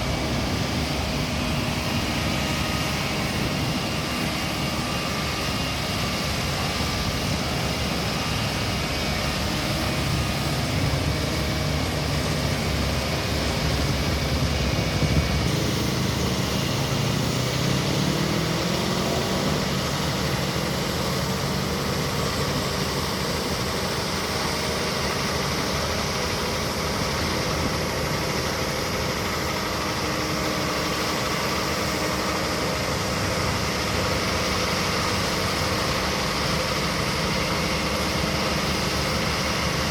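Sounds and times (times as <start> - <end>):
road construction machinery running: 0.0 - 39.9
engine revving up: 15.5 - 21.7.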